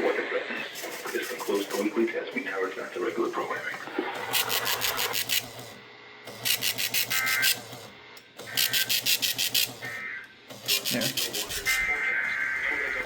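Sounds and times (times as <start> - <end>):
small printer buzzing clicks: 4.2 - 11.8.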